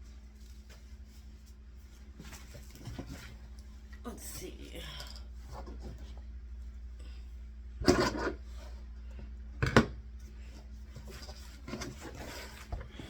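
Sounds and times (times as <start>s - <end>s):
rustling and rubbing on tabletop: 0.0s - 3.9s, 10.2s - 13.0s.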